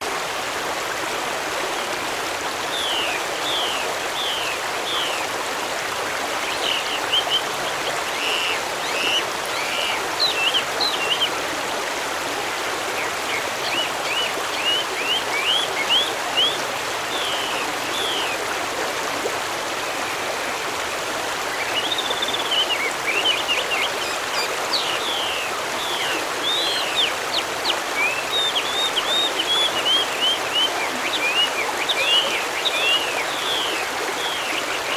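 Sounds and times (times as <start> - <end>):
stream flowing: 0.0 - 34.9
small birds chirping: 6.4 - 11.9, 12.5 - 18.4, 21.5 - 34.9.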